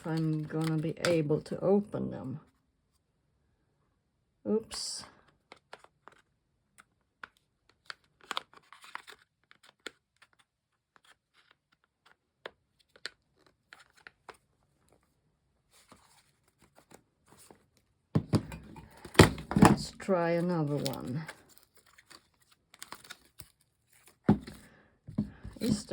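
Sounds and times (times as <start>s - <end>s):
plastic packaging crinkling: 20.4s - 24.5s.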